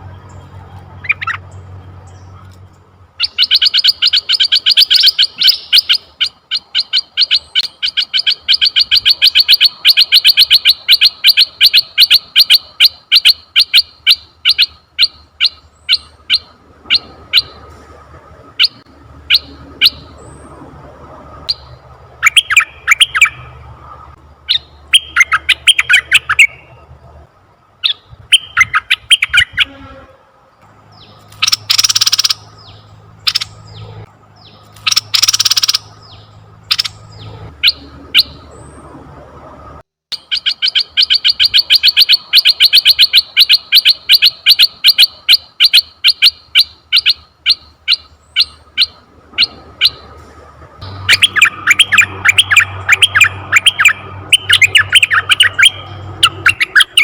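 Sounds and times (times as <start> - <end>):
bird chattering: 1.0 - 2.5, 3.2 - 17.6, 24.5 - 26.7, 27.8 - 29.7, 31.0 - 38.4, 40.2 - 50.0, 50.8 - 57.0
bird calls with sharp notes: 3.2 - 17.7, 21.5 - 23.7, 24.4 - 26.9, 27.8 - 30.1, 30.9 - 39.0, 40.1 - 50.1, 50.8 - 57.0.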